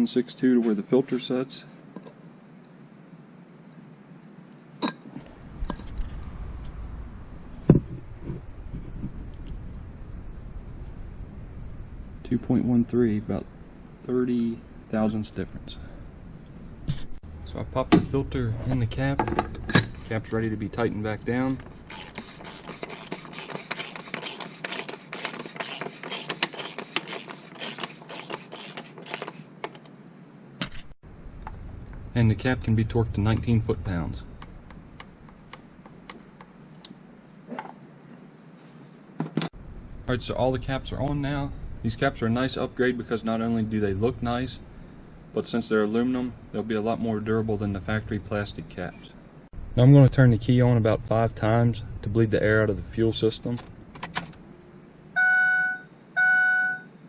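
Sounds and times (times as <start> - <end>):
low rumble: 5.3 - 21.9, 31.0 - 35.2, 39.6 - 43.0
socket ratchet clicking: 21.9 - 29.4.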